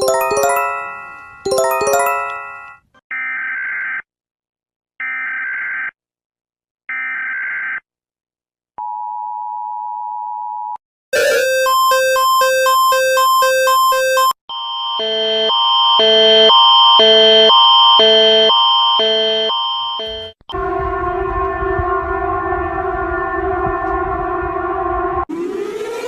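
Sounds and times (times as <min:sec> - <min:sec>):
ringing chime chord: 0:00.0 - 0:02.8
two-tone attention signal: 0:11.2 - 0:14.4.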